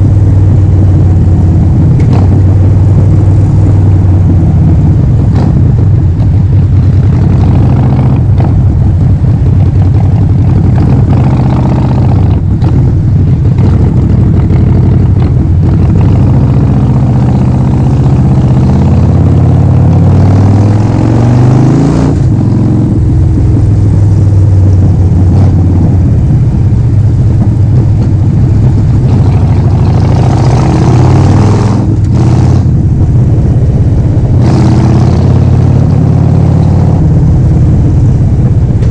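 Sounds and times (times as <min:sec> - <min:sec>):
motorcycle engine running loud: 0:00.0 - 0:38.9.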